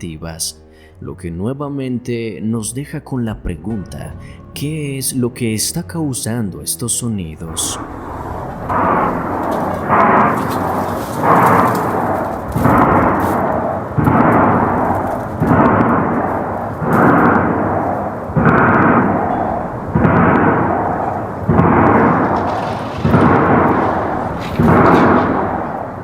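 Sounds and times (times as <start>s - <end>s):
loud booms: 3.2s - 6.6s, 7.4s - 26.0s.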